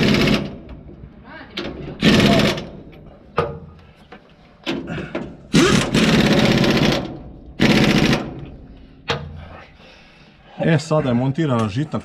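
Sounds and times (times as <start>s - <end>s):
impact wrench hammering: 0.0s - 0.8s, 5.5s - 9.4s.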